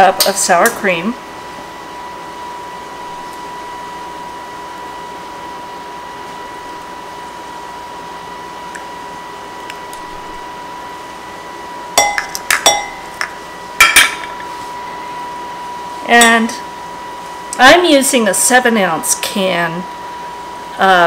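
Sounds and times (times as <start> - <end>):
utensil clinking against bowl: 12.0 - 14.3.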